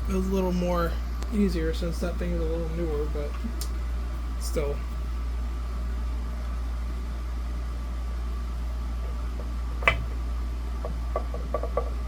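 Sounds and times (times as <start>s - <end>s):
steady low hum: 0.0s - 12.0s
knock of fan parts handled: 9.0s - 10.2s, 10.8s - 12.0s.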